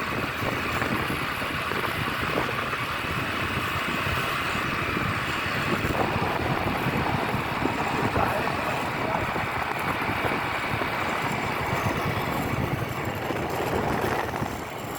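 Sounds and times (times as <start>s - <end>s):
vehicle engine: 0.0s - 14.9s
tyre noise: 4.1s - 14.9s.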